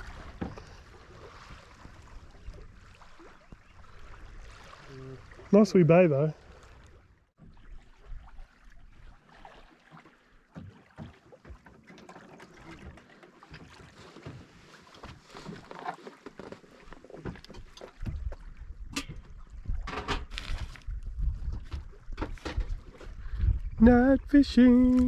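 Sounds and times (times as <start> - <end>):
water lapping against a hull: 0.0 - 25.0
wind buffeting microphone: 18.0 - 25.0.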